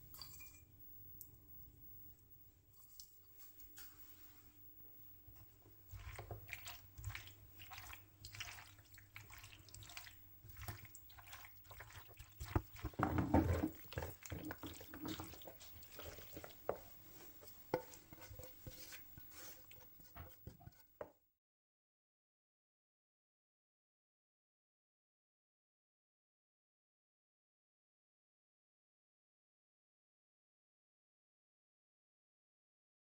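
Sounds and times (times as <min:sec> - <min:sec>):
water splashing and dripping: 0:06.0 - 0:17.2.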